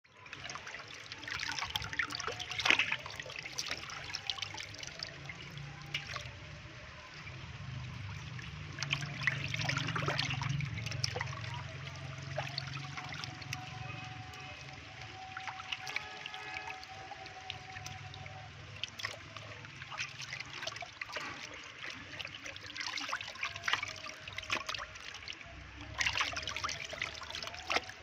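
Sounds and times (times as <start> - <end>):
water trickling and splashing: 0.0 - 28.0.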